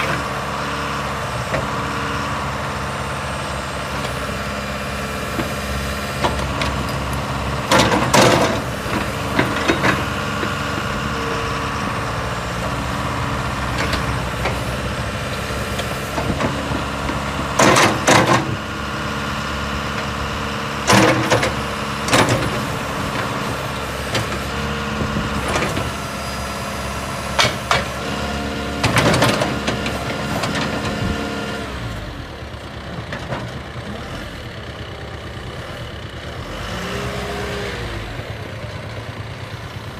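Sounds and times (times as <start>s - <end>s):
diesel engine running: 0.0s - 39.9s
machine knocks and clanks: 6.2s - 10.6s.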